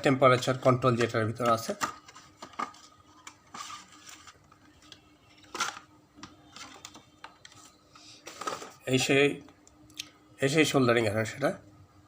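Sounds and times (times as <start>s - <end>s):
packaging rustling: 0.2s - 9.1s.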